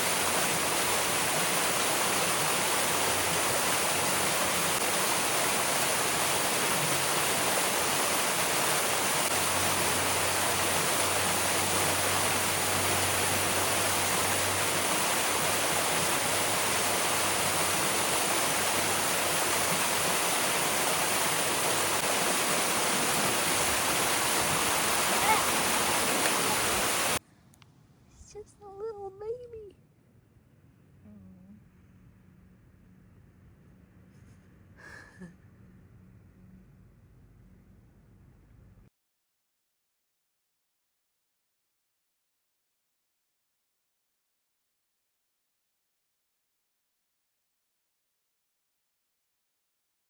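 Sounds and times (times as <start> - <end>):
waterfall roaring: 0.0 - 27.2.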